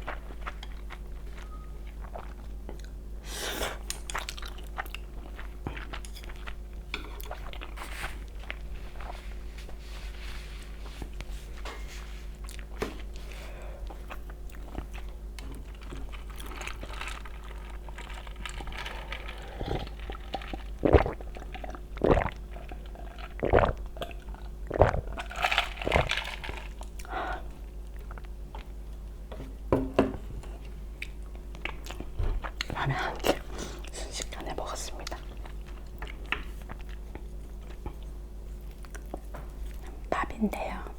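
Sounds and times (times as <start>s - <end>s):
chewing and slurping noodles: 3.6s - 11.2s, 13.9s - 27.1s.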